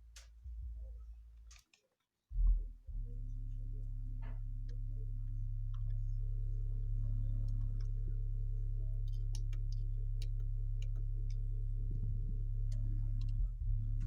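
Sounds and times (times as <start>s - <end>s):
small clicks and ticks: 1.4s - 2.6s, 8.9s - 14.0s
amplifier mains hum: 2.3s - 14.0s.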